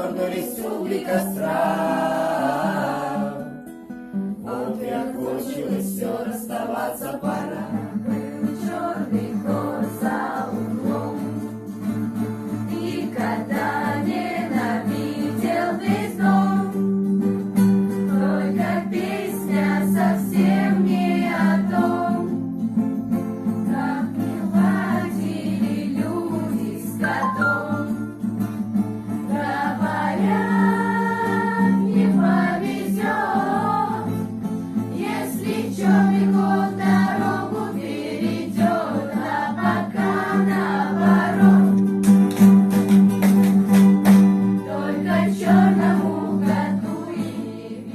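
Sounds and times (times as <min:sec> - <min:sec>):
group singing: 0:00.0 - 0:03.6, 0:04.4 - 0:11.8, 0:12.5 - 0:16.9, 0:18.0 - 0:22.4, 0:23.6 - 0:28.1, 0:29.2 - 0:42.0, 0:44.6 - 0:47.9
instrumental accompaniment: 0:27.0 - 0:32.8.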